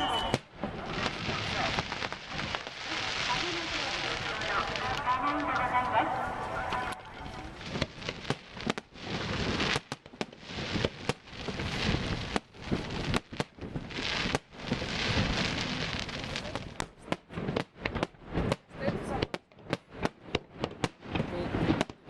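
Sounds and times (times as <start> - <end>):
fireworks bangs: 0.0 - 22.0
crackle of bursting shells: 6.9 - 16.9.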